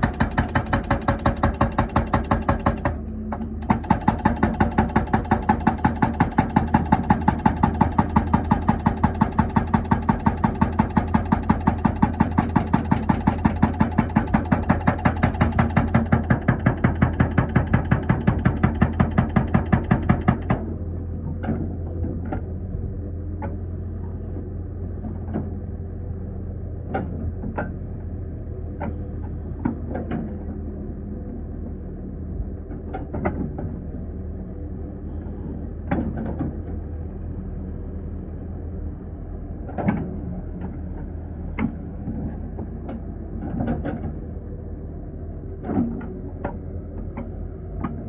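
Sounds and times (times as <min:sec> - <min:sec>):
hydraulic breaker hammering: 0:00.0 - 0:20.6
metallic clanks and knocks: 0:00.0 - 0:20.6
excavator engine running: 0:00.0 - 0:48.0.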